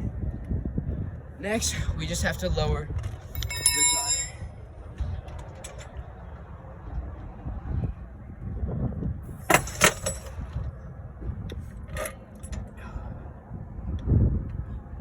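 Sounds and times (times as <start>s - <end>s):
steady low rumble: 0.0s - 15.0s
car jack metal clanks: 3.4s - 4.4s, 9.4s - 10.6s.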